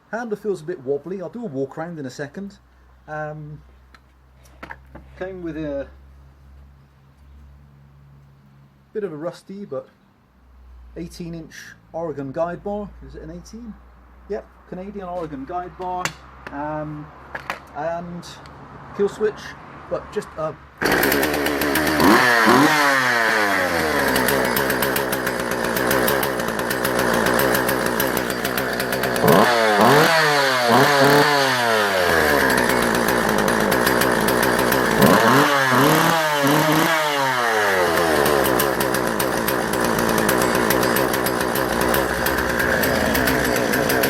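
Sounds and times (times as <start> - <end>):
chainsaw revving: 20.8 - 44.0.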